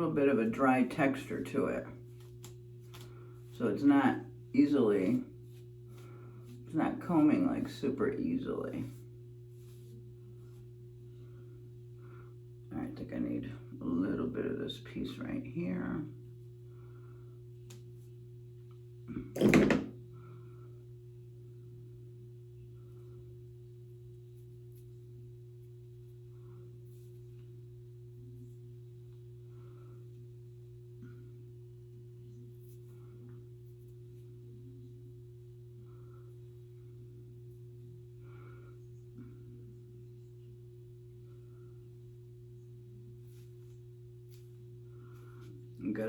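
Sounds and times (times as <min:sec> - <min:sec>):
low electrical hum: 0:00.0 - 0:46.0
rustles of hair handled: 0:02.0 - 0:07.7, 0:08.7 - 0:11.3, 0:42.3 - 0:45.9.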